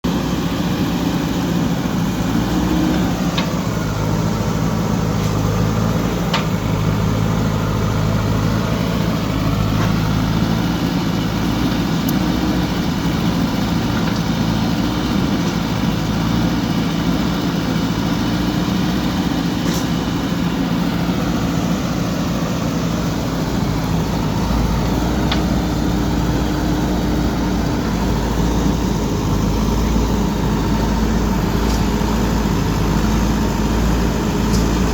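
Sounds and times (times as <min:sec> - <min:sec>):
diesel engine digging: 0:00.0 - 0:34.9.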